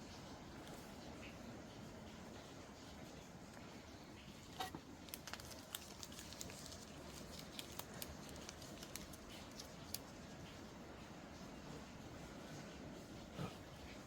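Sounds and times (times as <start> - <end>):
steady rain hiss: 0.0 - 14.0
paper crinkling: 4.5 - 10.5.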